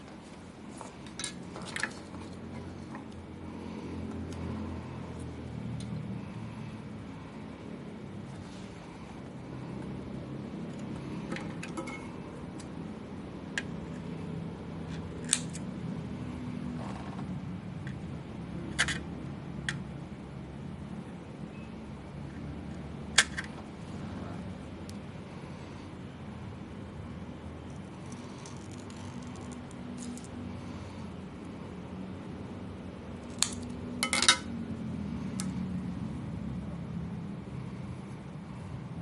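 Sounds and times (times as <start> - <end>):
low steady hum: 0.0 - 39.0
clicks of small parts and tools: 18.7 - 19.8.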